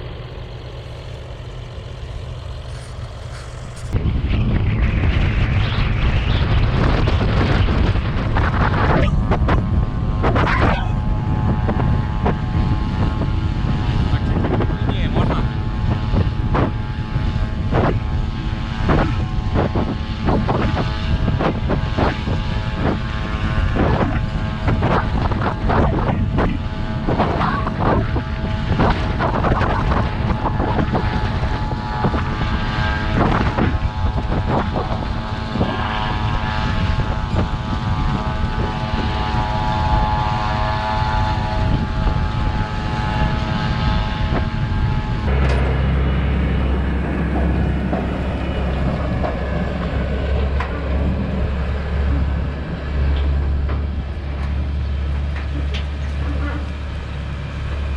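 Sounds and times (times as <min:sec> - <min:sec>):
farm machinery engine rumbling: 0:00.0 - 0:57.9.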